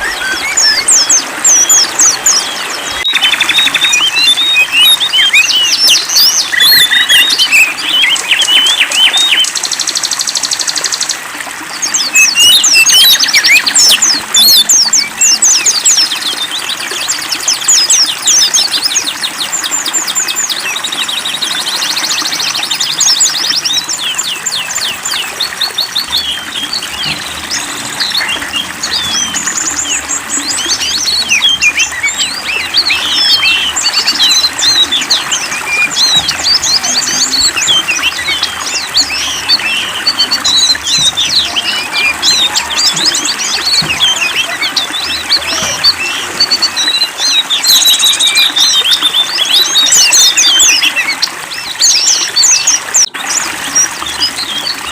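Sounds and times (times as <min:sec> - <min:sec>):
songbirds chirping and trilling: 0:00.0 - 0:54.9.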